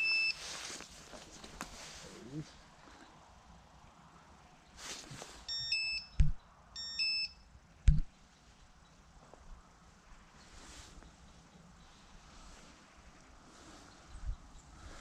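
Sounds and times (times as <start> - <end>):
electronic bite alarm tone: 5.5 - 8.0
loud dull thumps: 6.2 - 6.4, 7.9 - 8.1.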